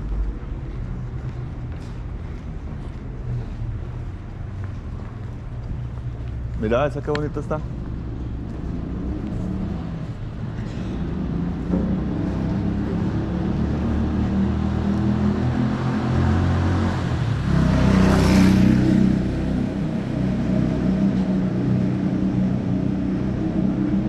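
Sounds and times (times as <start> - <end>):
vehicle engine running: 0.0 - 14.4.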